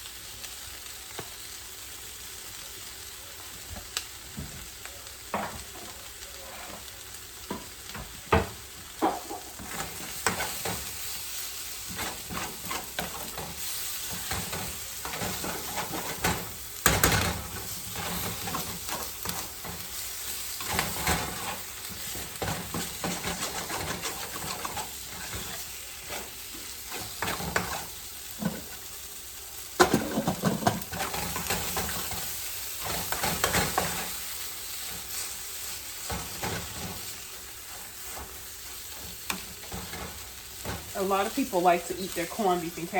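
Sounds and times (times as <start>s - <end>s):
meat sizzling in a frying pan: 0.0s - 42.9s
utensil scraping and knocking pan: 11.8s - 19.8s, 20.6s - 28.8s, 29.8s - 32.2s.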